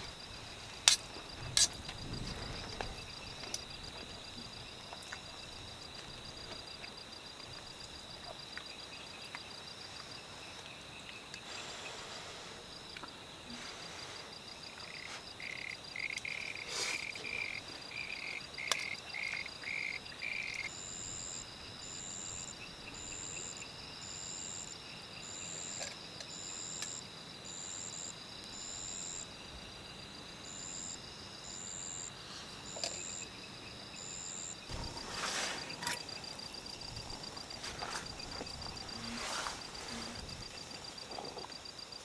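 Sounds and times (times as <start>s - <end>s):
insect chirp: 0.0s - 42.0s
high insect trill: 14.2s - 42.0s.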